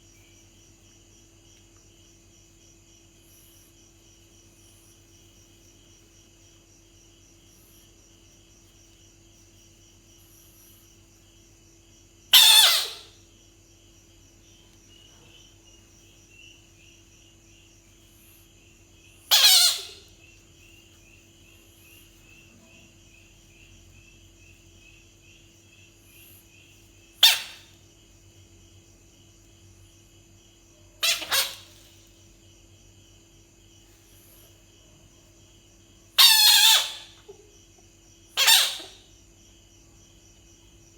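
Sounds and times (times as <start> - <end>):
insect chirring: 0.0 - 40.9
bullfrog calling: 12.3 - 13.3, 19.2 - 20.4, 27.2 - 27.8, 31.0 - 31.8, 36.2 - 37.5, 38.4 - 39.1.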